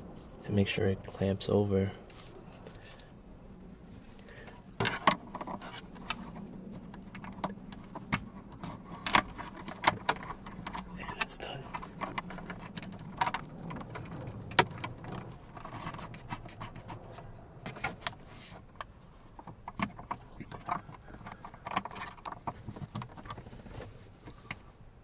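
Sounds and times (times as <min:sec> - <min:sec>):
metal and plastic clicks and rattles: 0:04.8 - 0:24.6.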